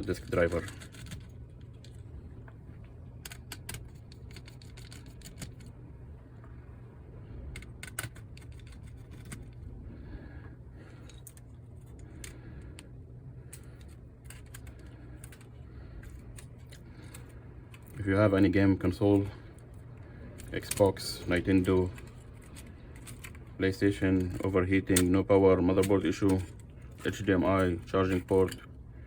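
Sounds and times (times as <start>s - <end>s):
small screws and plastic parts clicking: 0.0s - 2.0s, 3.0s - 5.8s, 7.5s - 9.7s, 10.9s - 28.8s
steady low hum: 0.0s - 29.0s.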